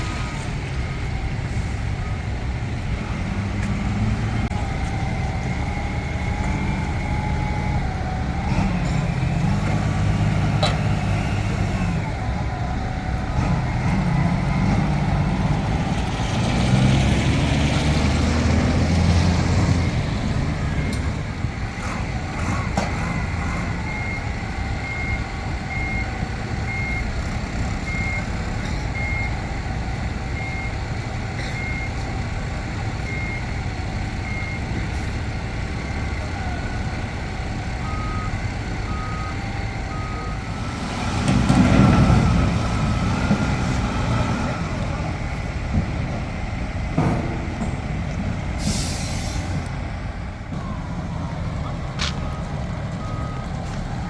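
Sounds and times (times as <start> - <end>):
diesel engine running: 0.0 - 54.0
travel alarm beeping: 37.8 - 40.5.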